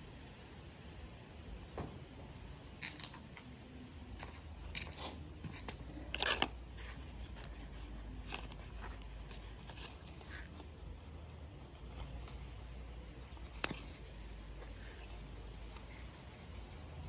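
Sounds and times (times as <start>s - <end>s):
low steady hum: 0.0s - 17.0s
clicks and rustles of parts: 2.8s - 3.5s, 4.1s - 17.0s.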